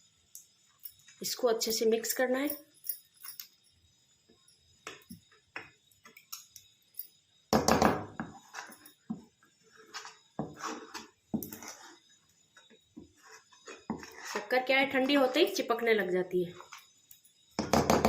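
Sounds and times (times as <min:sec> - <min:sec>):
spoon scraping a pan: 0:09.6 - 0:12.1, 0:13.0 - 0:15.3.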